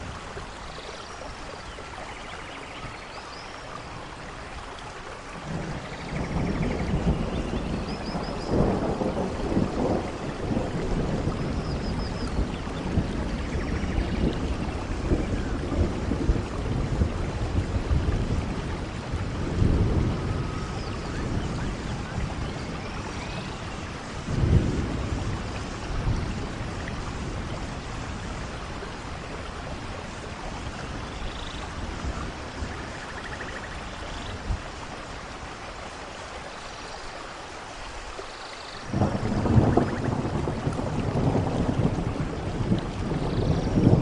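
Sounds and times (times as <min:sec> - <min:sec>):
heavy rainfall: 0:00.0 - 0:44.0
thunder rumbling: 0:05.4 - 0:34.7, 0:38.9 - 0:44.0.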